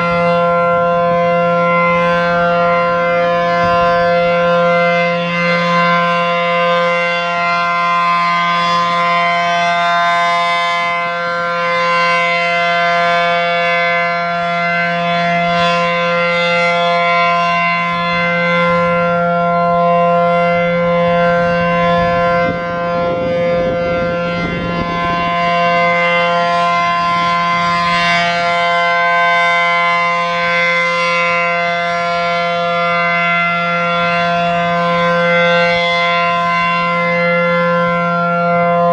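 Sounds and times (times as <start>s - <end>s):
rotating warning siren: 0.0s - 38.9s.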